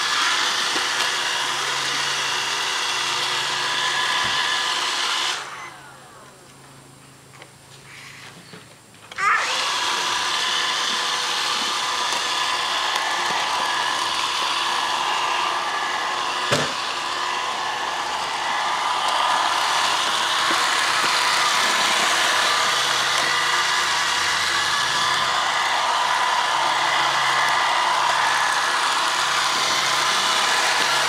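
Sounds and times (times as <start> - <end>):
robot vacuum motor whirring: 0.0 - 6.4, 9.2 - 31.0.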